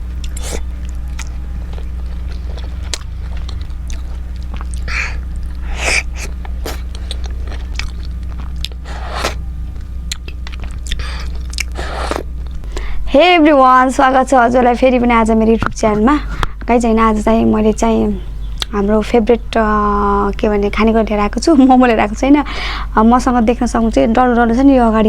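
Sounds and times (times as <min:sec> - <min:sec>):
low electrical hum: 0:00.0 - 0:25.0
person biting and chewing food: 0:00.2 - 0:12.9.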